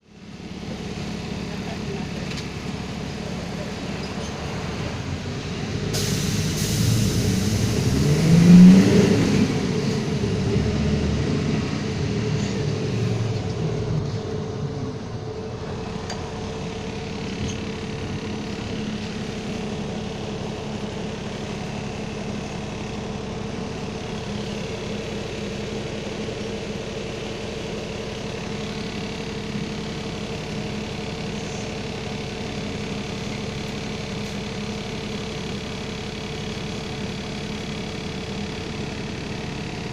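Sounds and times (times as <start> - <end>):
bus diesel engine revving: 0.5 - 39.9.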